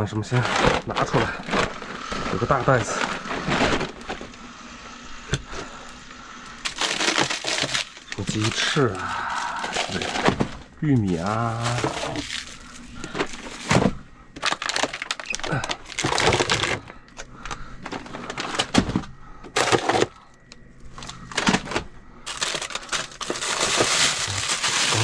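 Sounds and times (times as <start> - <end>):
plastic bags crinkling: 0.0 - 4.3, 6.6 - 18.9, 19.5 - 20.2, 21.0 - 25.0
frozen food packages clattering: 0.0 - 4.4, 5.3 - 25.0.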